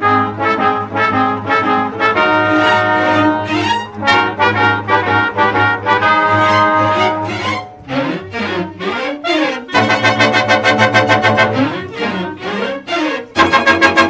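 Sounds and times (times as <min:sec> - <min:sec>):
quick run of sharp notes: 0:09.8 - 0:12.2.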